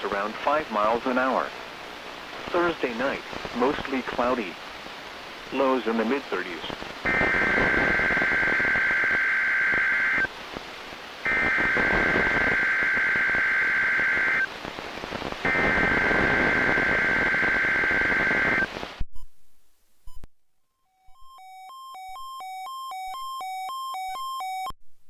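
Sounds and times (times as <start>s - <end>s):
radio static: 2.4s - 4.6s, 5.4s - 19.0s
buzzing data tone bursts: 7.0s - 10.3s, 11.2s - 14.5s, 15.4s - 18.7s.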